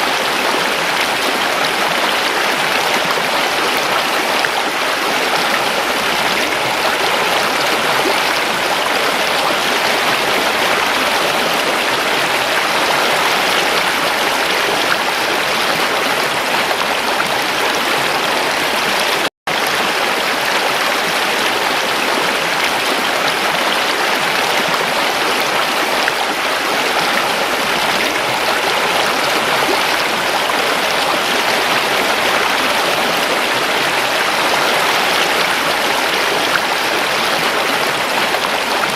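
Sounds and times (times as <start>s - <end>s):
stream rushing and splashing: 0.0s - 38.9s.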